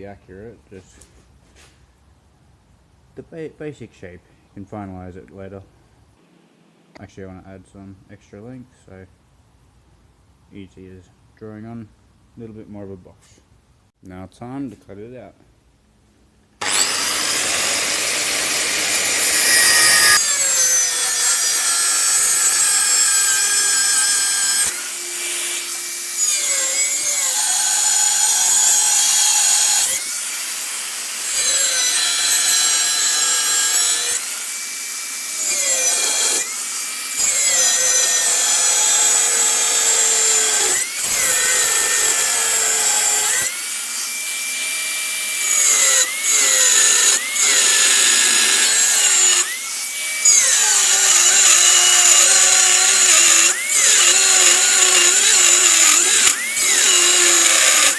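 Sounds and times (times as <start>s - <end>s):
power tool grinding steel: 16.6s - 57.9s.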